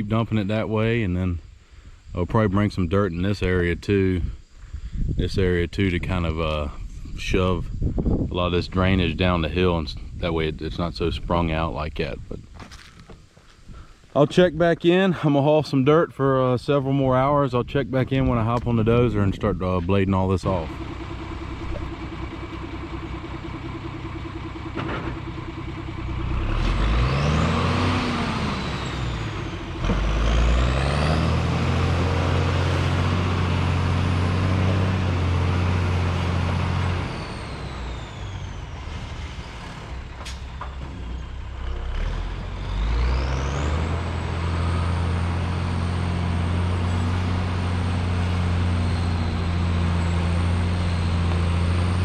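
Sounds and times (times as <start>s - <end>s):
high engine whine: 16.6s - 52.0s
diesel truck engine revving: 17.0s - 52.0s.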